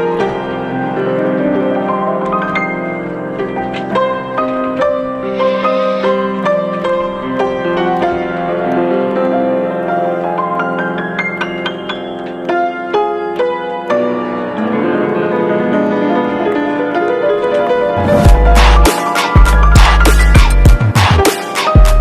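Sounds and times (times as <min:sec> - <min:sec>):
gentle piano melody: 0:00.0 - 0:22.0
music with heavy bass and beats: 0:18.0 - 0:22.0.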